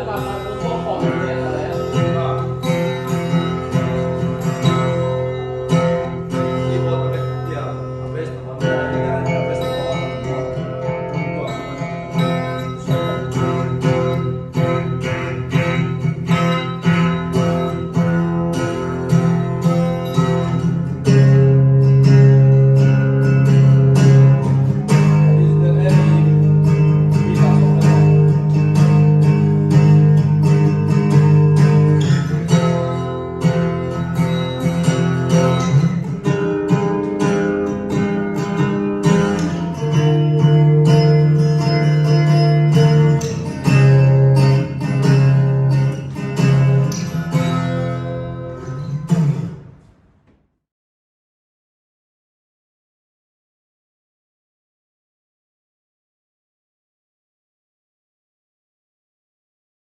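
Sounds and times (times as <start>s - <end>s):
acoustic guitar music: 0.0s - 50.3s.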